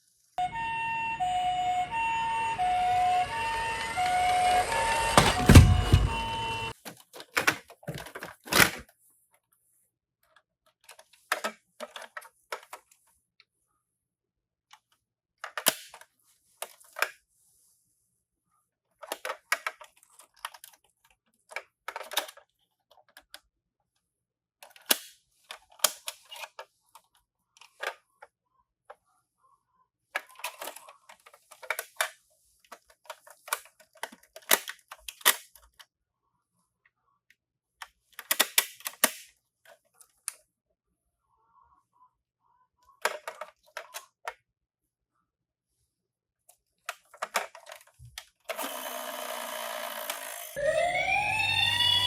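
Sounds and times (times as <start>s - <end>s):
toy cars clicking together: 38.2s - 39.3s.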